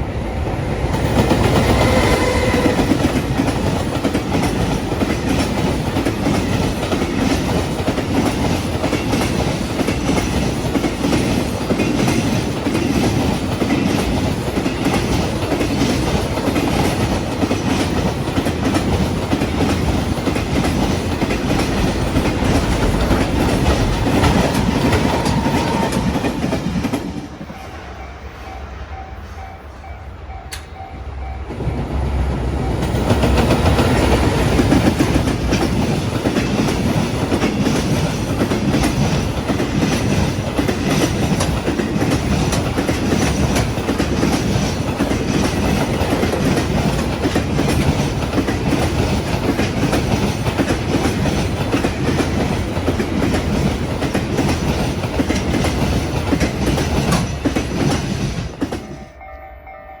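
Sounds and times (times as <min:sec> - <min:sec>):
freight train rumbling: 0:00.0 - 0:59.9
wagon wheels clacking over rail joints: 0:33.2 - 0:59.0.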